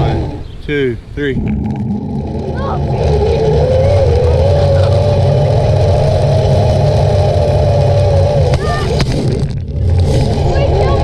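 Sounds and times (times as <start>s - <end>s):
zip-line pulleys rolling on cable: 2.4s - 11.0s.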